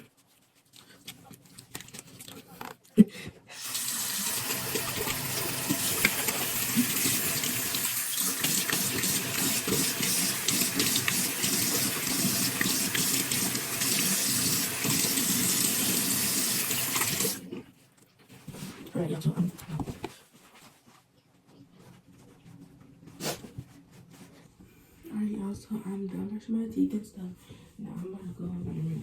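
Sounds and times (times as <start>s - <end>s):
tap running into sink: 4.2s - 17.4s.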